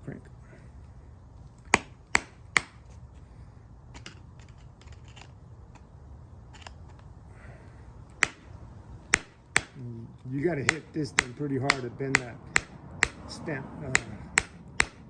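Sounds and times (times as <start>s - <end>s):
hammer striking metal: 1.7s - 2.8s, 9.1s - 9.8s, 10.7s - 13.3s, 13.9s - 15.0s.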